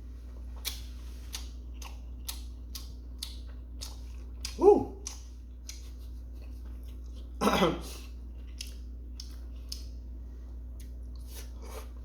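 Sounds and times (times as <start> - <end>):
man coughing: 7.4 - 8.0.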